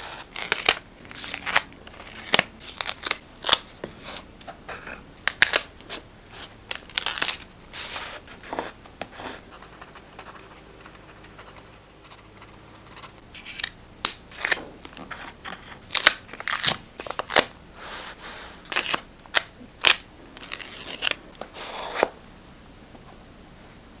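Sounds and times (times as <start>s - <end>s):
scissors snipping paper: 0.0s - 9.4s.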